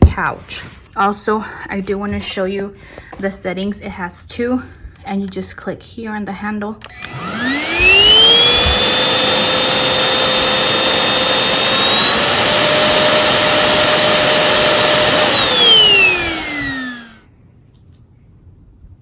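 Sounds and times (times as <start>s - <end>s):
vacuum motor whining: 6.8s - 17.2s.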